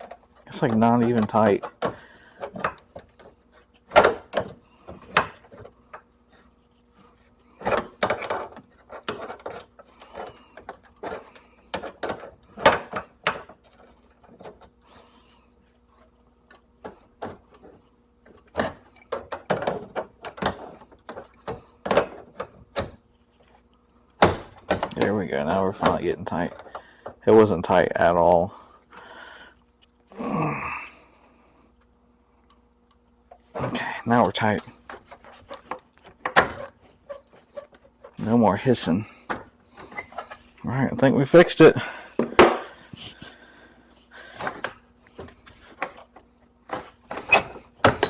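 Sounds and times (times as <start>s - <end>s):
faint steady hum: 0.0s - 48.0s.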